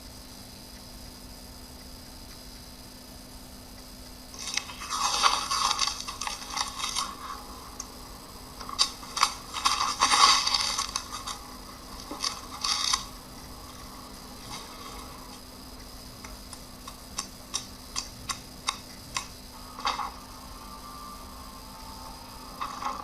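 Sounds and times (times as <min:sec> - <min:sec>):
scratchy rasping noise: 0:04.4 - 0:15.5.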